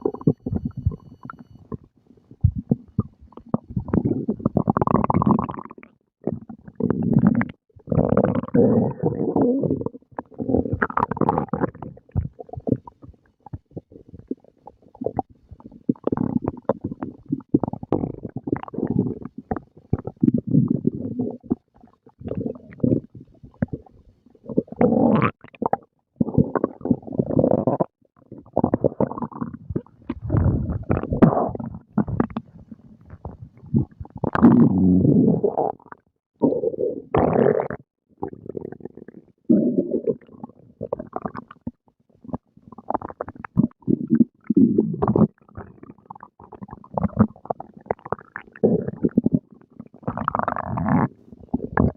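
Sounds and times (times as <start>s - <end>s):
stomach growling and gurgling: 0.0s - 51.9s.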